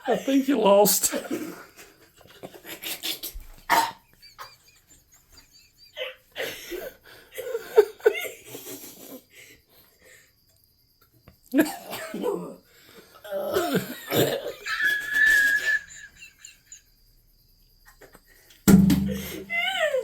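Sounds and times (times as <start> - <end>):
person laughing: 13.6 - 16.8.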